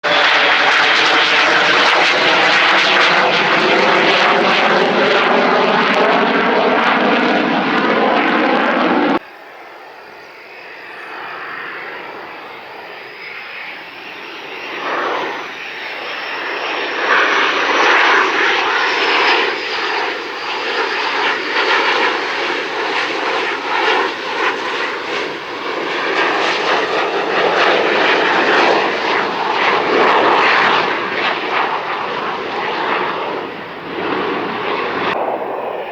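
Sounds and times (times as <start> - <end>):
high whine: 0.0 - 19.3
jet engine roar: 0.0 - 35.9.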